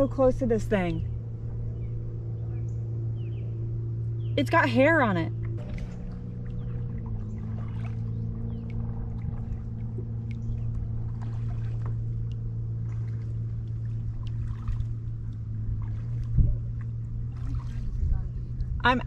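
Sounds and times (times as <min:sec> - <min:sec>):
low hum: 0:00.0 - 0:19.0
water dripping and lapping: 0:00.0 - 0:19.0
small splashes: 0:05.3 - 0:18.8
short low thump: 0:05.4 - 0:08.0.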